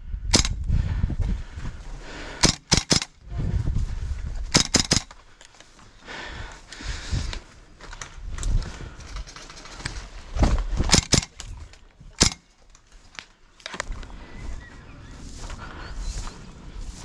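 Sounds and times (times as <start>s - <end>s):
heavy breathing: 0.0s - 2.7s, 5.1s - 9.7s, 13.8s - 17.0s
sharp cracks: 0.3s - 0.6s, 2.4s - 3.2s, 4.5s - 5.2s, 10.8s - 11.5s, 12.2s - 12.7s
footsteps: 9.7s - 17.0s.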